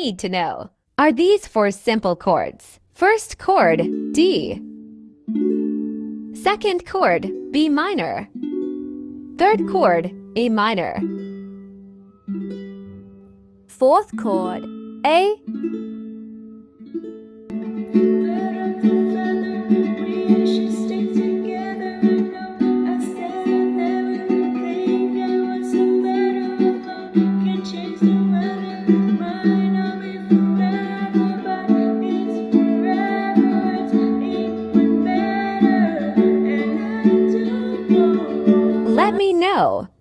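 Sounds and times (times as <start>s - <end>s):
person singing: 13.7s - 15.4s
ukulele strumming: 23.0s - 39.2s.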